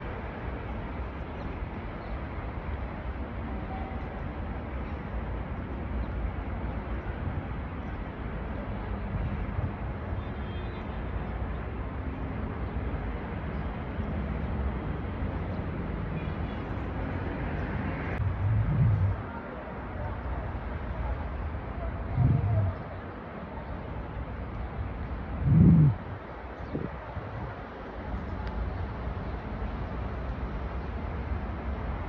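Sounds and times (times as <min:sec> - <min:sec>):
low rumbling background noise: 0:16.8 - 0:32.0
loud low rumble: 0:18.2 - 0:19.3, 0:22.1 - 0:23.0, 0:25.4 - 0:26.2.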